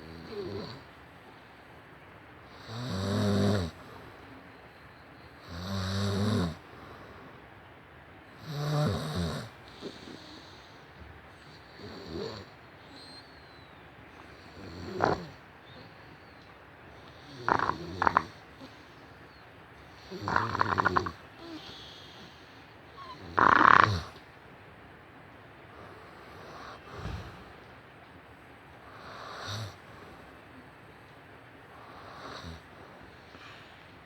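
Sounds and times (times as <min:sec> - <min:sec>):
person snoring: 0:14.8 - 0:15.3, 0:17.3 - 0:18.3, 0:20.1 - 0:21.6.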